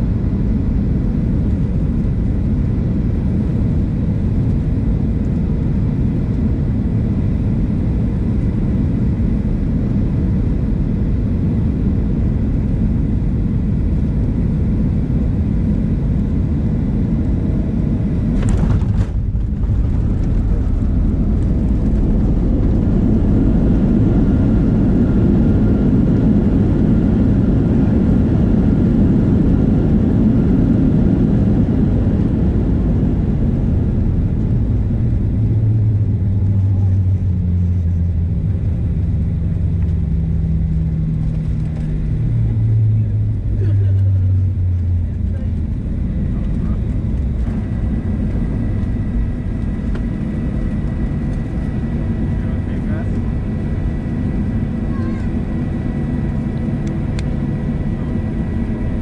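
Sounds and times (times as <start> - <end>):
aircraft engine noise: 0.0 - 59.0
wheels rumbling on ground: 18.2 - 25.4.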